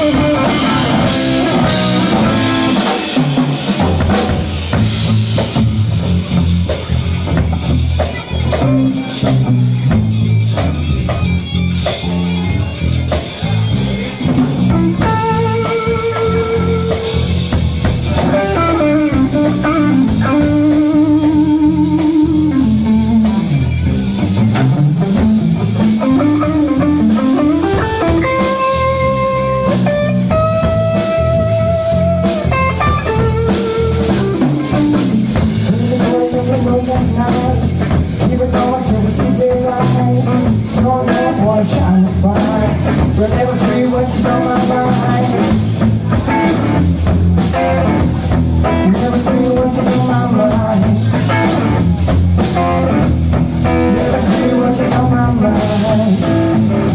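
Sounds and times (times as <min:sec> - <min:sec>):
blues guitar solo with bends: 0:00.0 - 0:04.3, 0:07.1 - 0:38.0, 0:39.6 - 0:56.9
bass guitar: 0:00.0 - 0:56.9
drum kit: 0:00.0 - 0:56.9.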